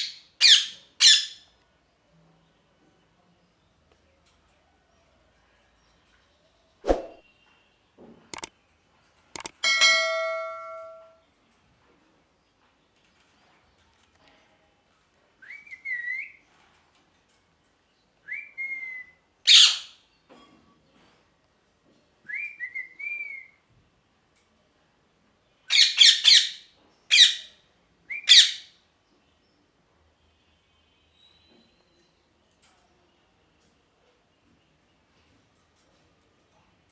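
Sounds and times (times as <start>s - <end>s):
parakeet harsh screeches: 0.0s - 1.4s
metallic bell-like ring: 9.6s - 11.2s.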